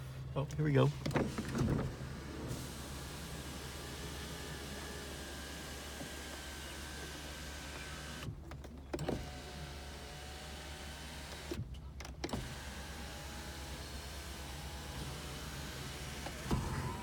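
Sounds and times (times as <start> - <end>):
electric sunroof motor whining: 12.3 - 17.0.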